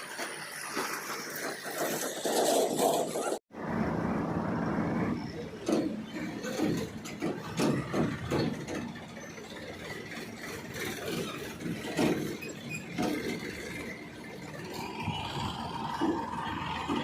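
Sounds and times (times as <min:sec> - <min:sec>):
heavy machinery engine running: 0:03.6 - 0:17.0
high-pitched whine: 0:14.4 - 0:17.0.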